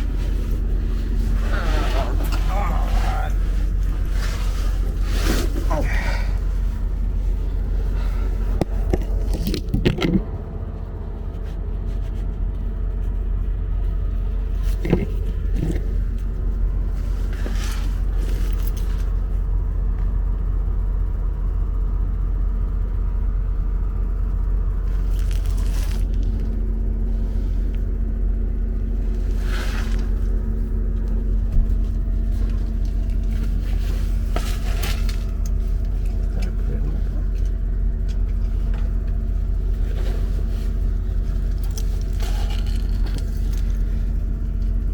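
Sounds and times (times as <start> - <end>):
vehicle engine idling: 0.0 - 44.9
knocks and scrapes: 8.4 - 10.5, 14.6 - 19.0, 39.8 - 44.2.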